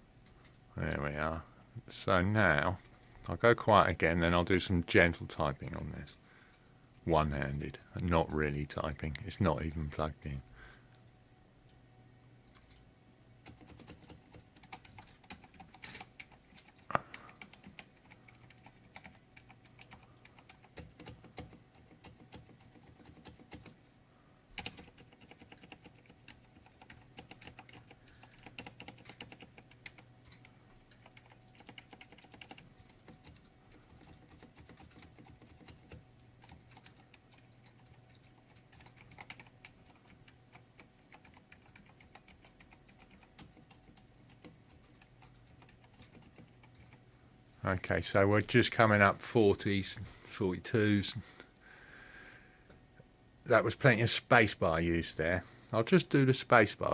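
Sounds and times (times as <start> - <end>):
soft keyboard typing: 12.4 - 12.8, 13.4 - 23.8, 24.6 - 47.0.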